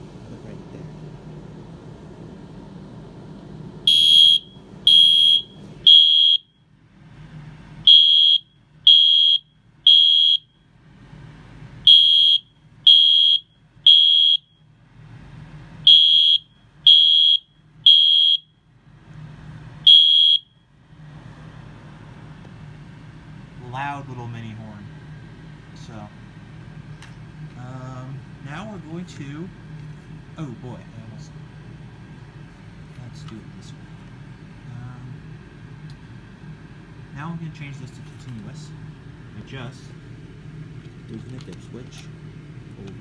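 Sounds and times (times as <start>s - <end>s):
fire alarm horn blasts: 3.8s - 6.6s, 7.8s - 10.7s, 11.8s - 14.7s, 15.8s - 18.6s, 19.8s - 20.7s.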